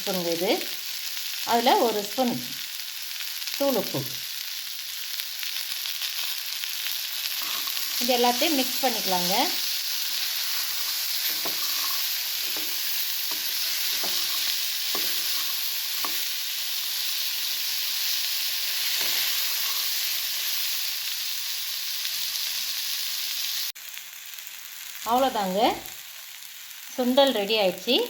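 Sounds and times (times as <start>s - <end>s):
chickpeas sizzling in oil: 0.0s - 28.0s
spoon scraping a pan: 7.2s - 16.5s, 18.6s - 20.5s.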